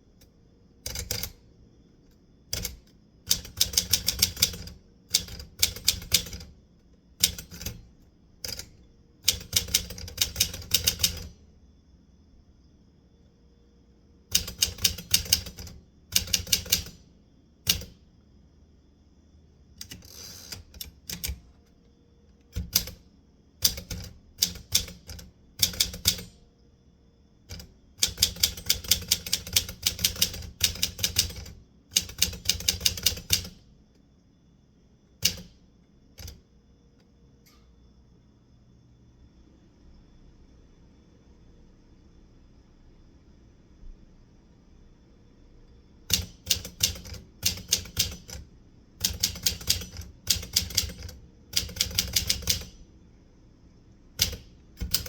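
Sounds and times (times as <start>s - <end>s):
typewriter keys clacking: 2.6s - 6.5s, 9.3s - 11.3s, 19.8s - 21.4s, 22.6s - 23.0s, 23.6s - 26.4s, 27.5s - 33.6s, 46.1s - 48.4s, 49.0s - 52.8s, 54.2s - 55.0s.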